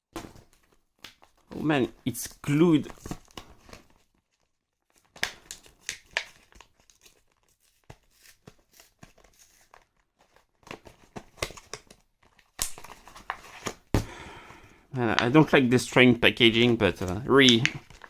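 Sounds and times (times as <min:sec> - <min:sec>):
packaging being torn open: 0:02.9 - 0:13.9.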